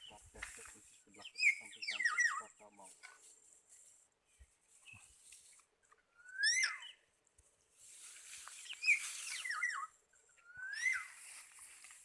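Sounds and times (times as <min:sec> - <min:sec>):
bird whistled call: 0:06.2 - 0:07.0, 0:08.6 - 0:11.2.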